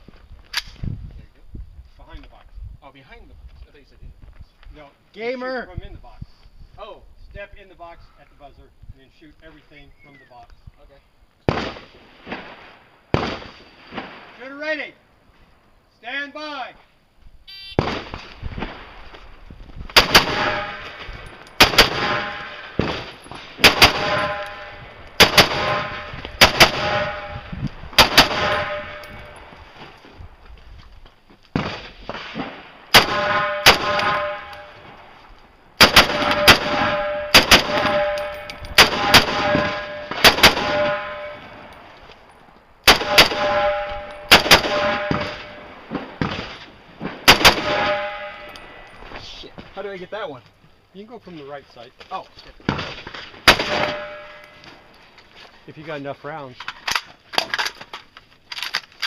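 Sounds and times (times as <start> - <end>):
rifle shots: 11.5 - 14.4, 17.8 - 19.0, 19.9 - 29.3, 31.6 - 34.9, 35.8 - 41.6, 42.8 - 48.5, 52.7 - 54.4
steel target ringing: 22.0 - 27.5, 28.2 - 29.5, 33.1 - 34.8, 36.1 - 41.9, 47.7 - 49.0, 53.6 - 54.6.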